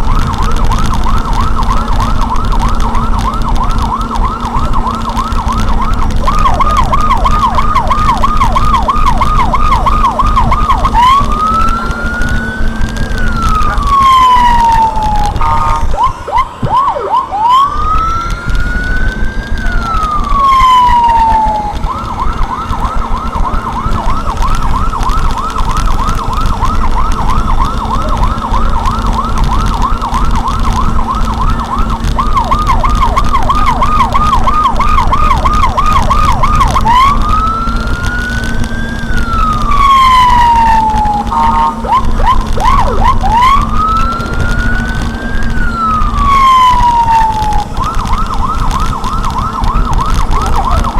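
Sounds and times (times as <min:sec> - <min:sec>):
electronic siren cycling tones: 0:00.0 - 0:50.9
vehicle rumble: 0:00.0 - 0:50.9.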